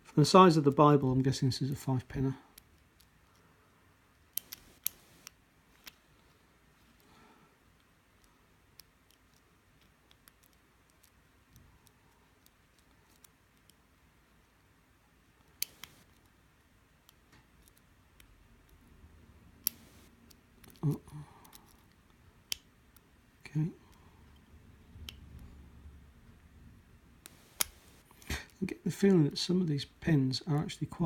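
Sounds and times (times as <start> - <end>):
lock pick clicking and scraping: 4.1 - 6.0, 7.8 - 13.8, 15.5 - 16.3, 19.6 - 20.8.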